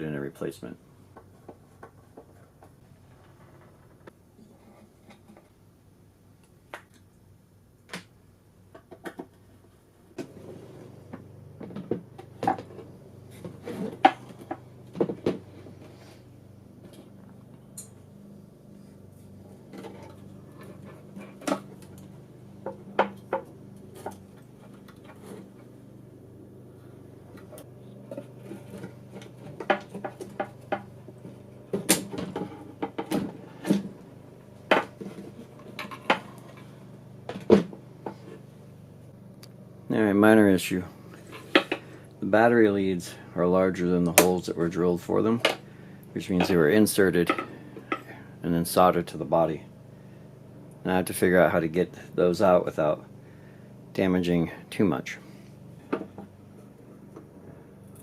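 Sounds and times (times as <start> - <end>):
low steady hum: 0.0 - 58.0.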